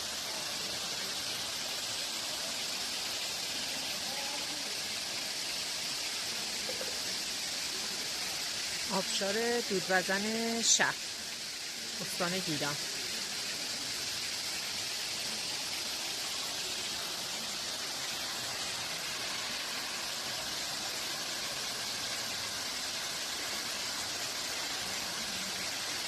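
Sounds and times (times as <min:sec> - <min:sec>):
waterfall rushing: 0:07.6 - 0:26.0.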